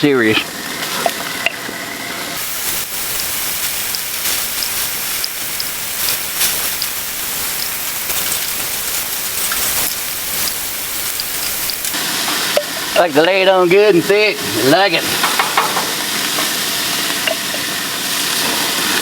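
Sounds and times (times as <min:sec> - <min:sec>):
meat sizzling on a grill: 0:00.0 - 0:19.0
grease crackling pops: 0:02.4 - 0:12.0.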